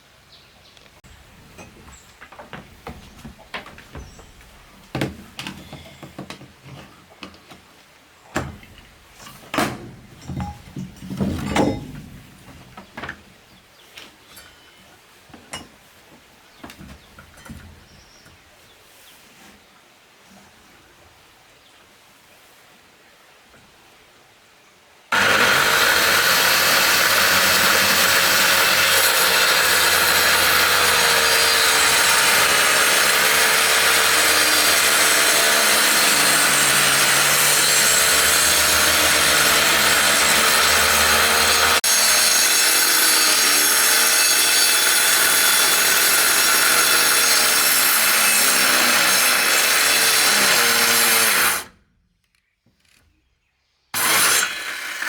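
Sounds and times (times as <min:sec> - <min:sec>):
power saw cutting wood: 0:25.1 - 0:51.8, 0:54.0 - 0:55.0.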